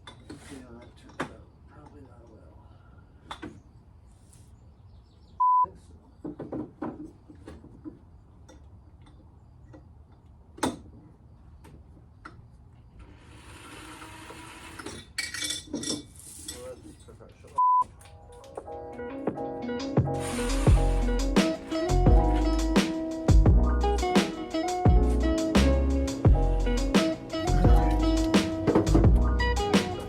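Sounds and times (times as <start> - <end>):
censor bleep: 5.4 - 5.7, 17.6 - 17.9
hissing rush: 20.1 - 22.0.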